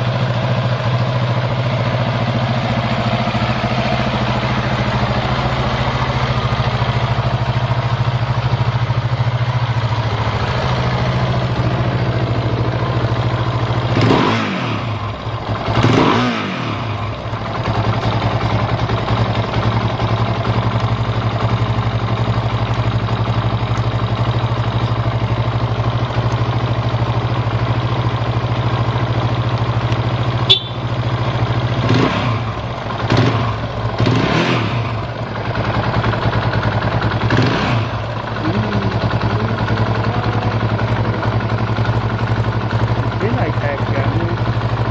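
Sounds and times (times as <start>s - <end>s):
motorcycle engine idling: 0.0s - 44.9s
engine revving: 10.6s - 17.3s, 31.6s - 35.2s, 35.9s - 42.0s, 42.8s - 44.4s.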